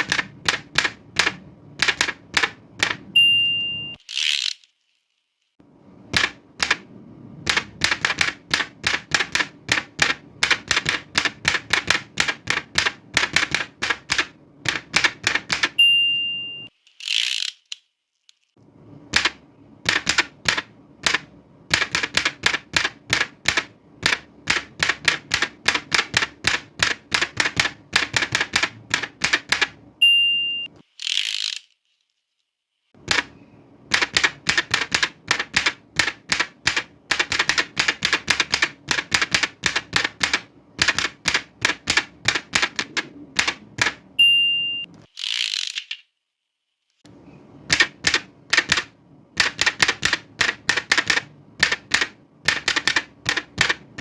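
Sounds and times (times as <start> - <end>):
typewriter carriage return: 0.0 - 3.1, 6.1 - 6.8, 7.5 - 15.8, 19.1 - 29.8, 33.0 - 44.0, 47.7 - 54.0
typewriter keystrokes: 0.0 - 3.1, 6.1 - 15.8, 19.1 - 29.8, 33.0 - 44.2, 47.7 - 54.0
typewriter bell ding: 3.2 - 4.0, 15.8 - 16.7, 30.0 - 30.7, 44.2 - 44.9.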